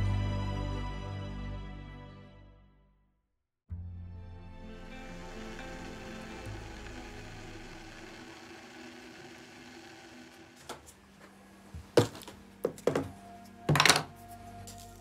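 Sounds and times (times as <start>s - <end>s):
hard objects knocking and clinking: 13.7s - 14.1s.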